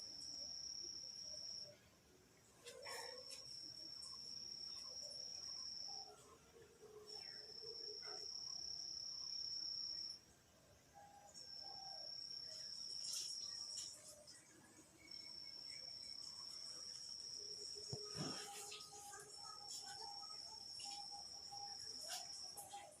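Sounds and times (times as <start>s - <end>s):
cricket trilling: 15.0s - 23.0s.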